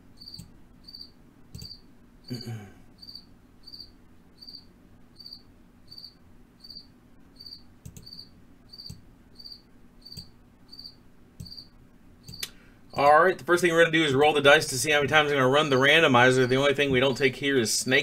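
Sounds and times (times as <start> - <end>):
cricket chirping: 0.1 - 2.4, 3.0 - 12.5.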